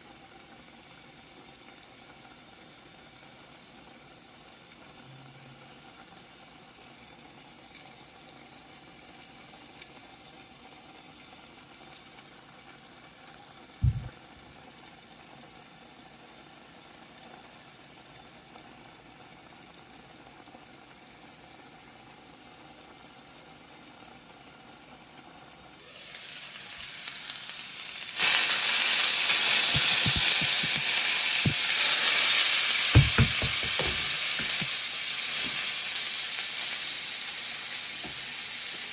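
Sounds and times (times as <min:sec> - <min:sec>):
food frying in hot pan: 0:00.0 - 0:38.9
low thump: 0:13.8 - 0:14.2, 0:33.0 - 0:34.0
utensil knocking while stirring: 0:13.8 - 0:14.2, 0:29.5 - 0:31.7, 0:32.9 - 0:34.7.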